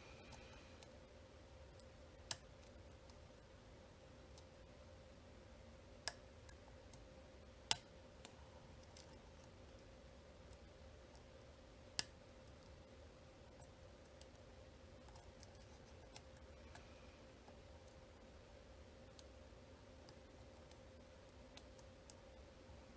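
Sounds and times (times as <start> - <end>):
faint steady hum: 0.0 - 22.9.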